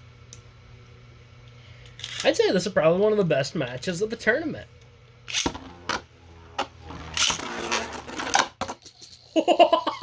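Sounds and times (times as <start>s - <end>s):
spinning tops whirring and scraping: 5.3s - 9.3s.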